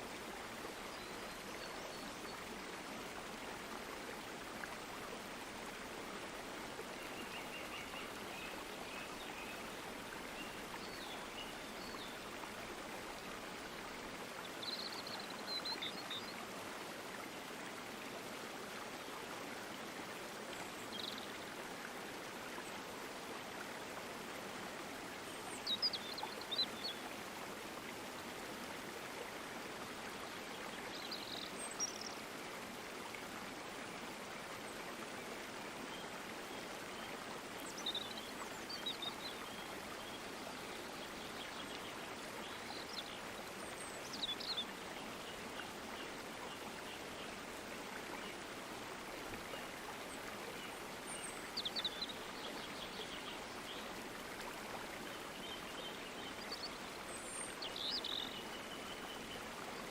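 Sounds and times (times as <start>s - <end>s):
stream of running water: 0.0s - 59.9s.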